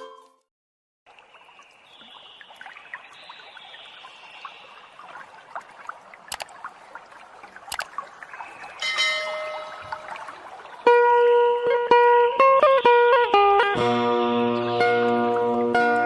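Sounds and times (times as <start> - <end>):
water trickling and splashing: 1.1 - 13.2
sharp clicks: 6.3 - 6.5, 7.7 - 7.9.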